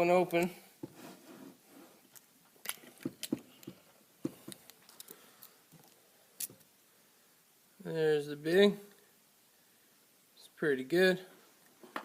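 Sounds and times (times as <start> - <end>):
small objects clicking and tapping: 2.1 - 6.7.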